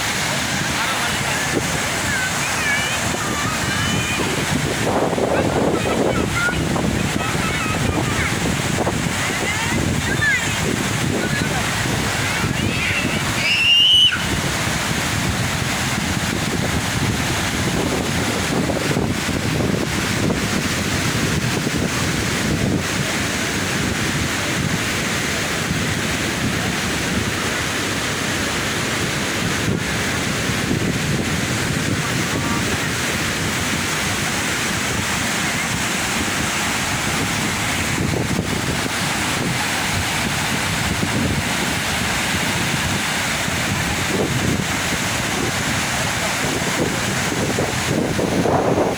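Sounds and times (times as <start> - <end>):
waterfall rushing: 0.0 - 48.9
wind buffeting microphone: 0.0 - 48.9.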